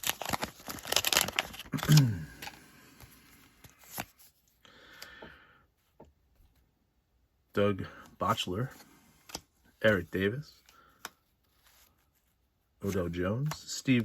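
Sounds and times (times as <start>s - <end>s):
cards and wrapper rustling: 0.0s - 5.1s.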